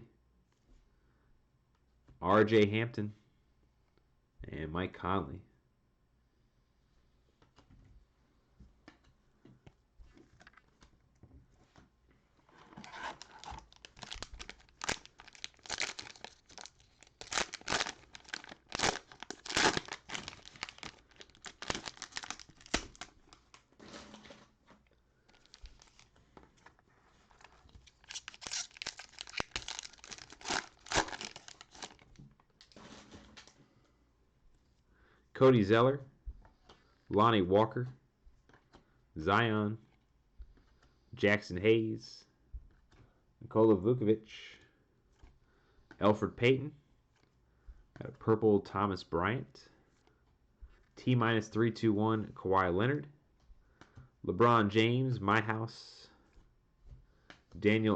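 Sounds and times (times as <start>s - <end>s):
faint clicks of cards handled: 7.3s - 8.0s, 38.3s - 39.0s, 45.1s - 46.1s, 56.2s - 57.7s
cellophane wrappers crinkling: 12.5s - 24.6s, 25.2s - 33.6s.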